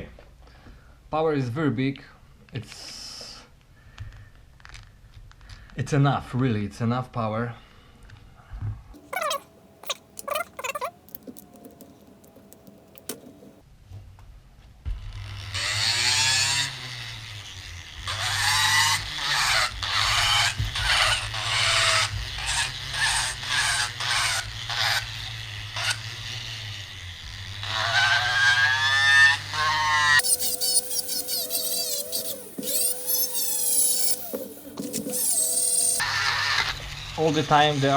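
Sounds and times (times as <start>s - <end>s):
clicks: 9.0s - 13.6s
flex shaft grinder carving wood: 9.0s - 13.6s, 15.6s - 36.2s.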